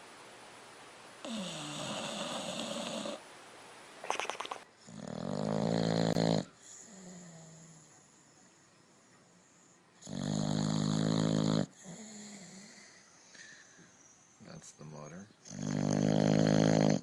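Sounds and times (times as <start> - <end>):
dog snoring: 1.2 - 3.2, 4.8 - 8.5, 9.4 - 13.0, 15.4 - 17.0.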